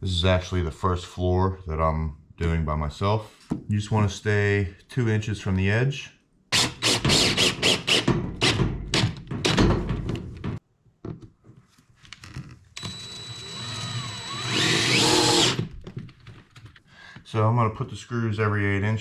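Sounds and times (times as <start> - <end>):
power drill driving screws: 6.6 - 8.6, 12.8 - 15.7.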